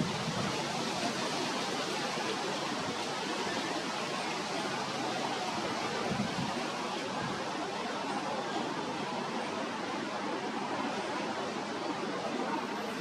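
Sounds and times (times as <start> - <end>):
steady rushing noise: 0.0 - 7.6.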